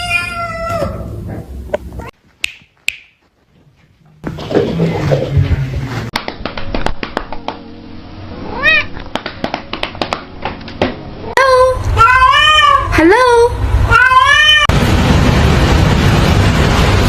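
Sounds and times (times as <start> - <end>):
cat meowing: 0.0 - 1.1, 8.4 - 9.0, 12.0 - 12.9, 13.9 - 14.7.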